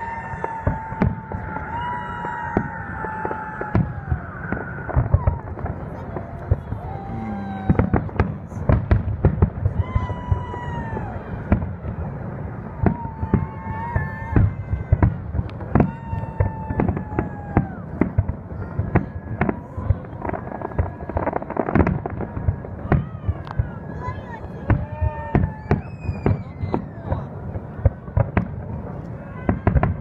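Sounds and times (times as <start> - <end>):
firework whistles: 0.0 - 5.5, 24.7 - 27.2
firework bangs: 0.0 - 30.0.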